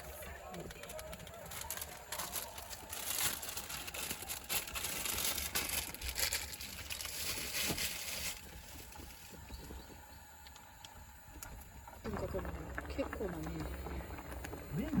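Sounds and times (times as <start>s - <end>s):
crinkling rustling handling noise: 0.0s - 10.1s.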